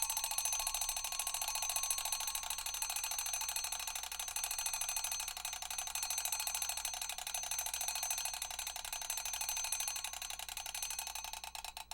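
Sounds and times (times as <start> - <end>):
alarm clock bell ringing: 0.0 - 5.2.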